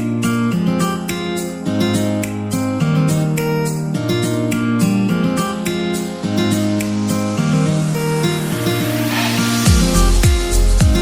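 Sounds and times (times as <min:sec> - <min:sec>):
strummed acoustic guitar music: 0:00.0 - 0:11.0.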